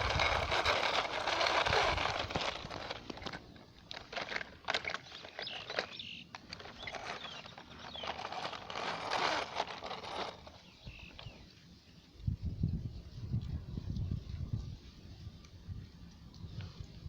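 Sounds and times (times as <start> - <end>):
scraping and crunching of soil: 0.0 - 11.7
bird chirps: 10.6 - 11.5.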